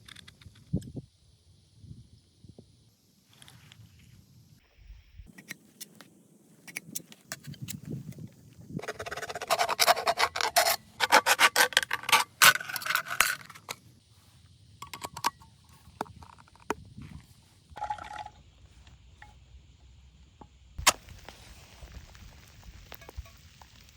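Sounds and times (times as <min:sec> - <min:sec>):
fast scraping and rasping strokes: 0:08.8 - 0:13.8.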